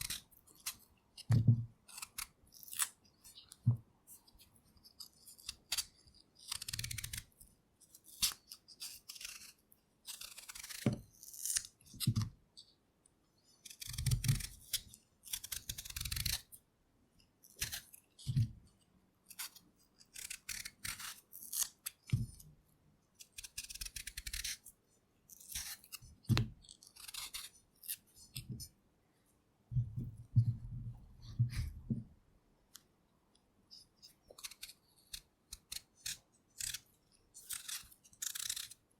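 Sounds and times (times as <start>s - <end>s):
knife scraping potato skin: 0.0s - 3.6s, 4.4s - 7.4s, 8.0s - 12.3s, 13.6s - 16.5s, 17.4s - 18.3s, 19.3s - 22.1s, 23.2s - 24.7s, 25.3s - 28.6s, 34.0s - 38.8s.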